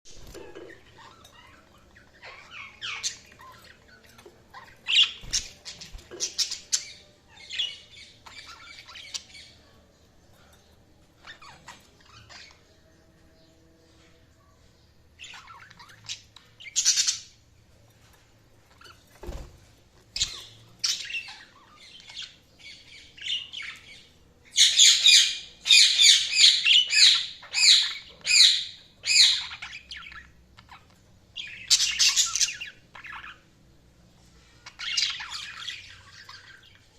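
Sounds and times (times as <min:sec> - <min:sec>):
budgies chirping and squawking: 0:00.1 - 0:12.9, 0:13.8 - 0:36.9.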